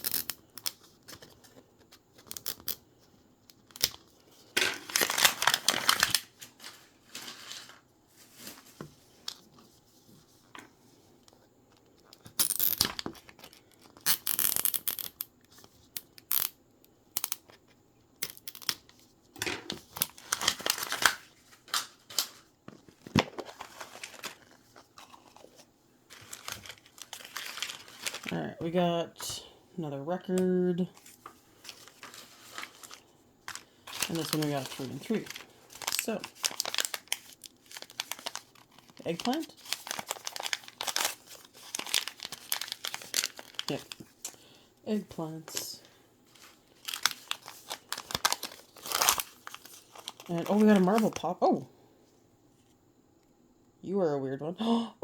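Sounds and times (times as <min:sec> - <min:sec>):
plastic wrapping tearing and crinkling: 0:00.0 - 0:00.8, 0:03.6 - 0:08.7, 0:12.2 - 0:15.2, 0:18.2 - 0:22.4, 0:23.2 - 0:28.4, 0:31.7 - 0:44.4, 0:46.4 - 0:51.2.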